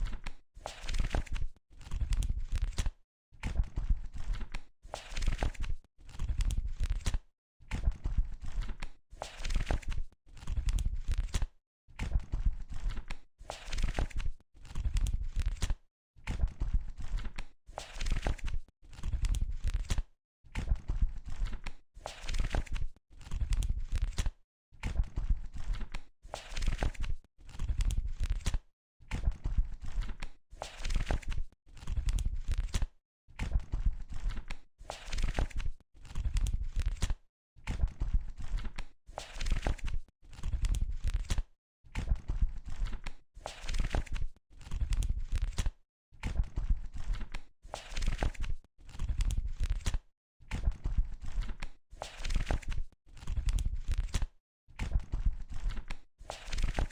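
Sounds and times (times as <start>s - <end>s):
book pages flipping: 0.0s - 2.9s, 4.1s - 7.2s, 8.4s - 11.5s, 12.7s - 15.8s, 17.0s - 20.0s, 21.3s - 24.3s, 25.5s - 28.6s, 29.8s - 32.9s, 34.1s - 37.2s, 38.4s - 41.5s, 42.6s - 45.8s, 46.6s - 50.0s, 51.2s - 56.9s.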